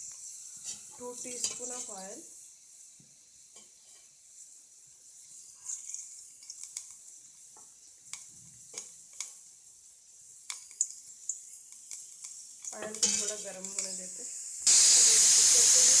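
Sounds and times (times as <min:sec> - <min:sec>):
oil sizzling in a pan: 0:00.0 - 0:16.0
oil ticks and crackles: 0:05.1 - 0:14.3.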